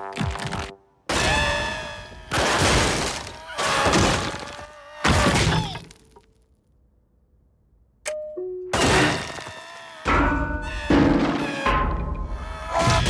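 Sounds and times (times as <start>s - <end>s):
cartoon crashing hits: 8.8s - 13.0s.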